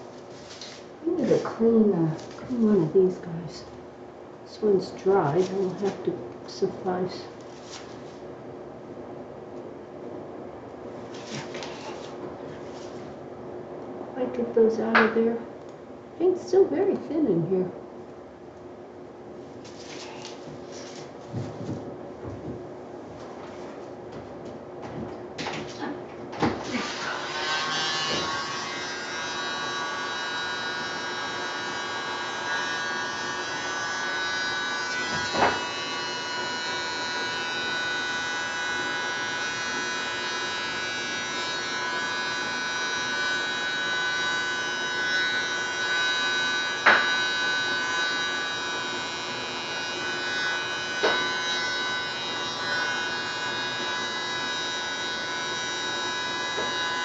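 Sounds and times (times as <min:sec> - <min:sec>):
small electric motor whining: 0:26.6 - 0:57.0.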